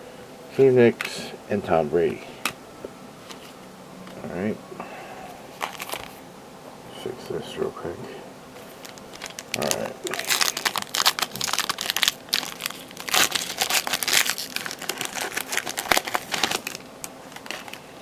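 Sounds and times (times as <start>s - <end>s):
foil wrapper crinkling: 5.6s - 6.2s, 8.6s - 18.0s.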